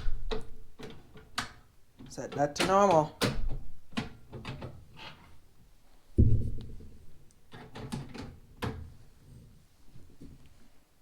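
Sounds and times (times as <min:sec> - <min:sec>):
dull ringing thump: 0:06.2 - 0:06.9.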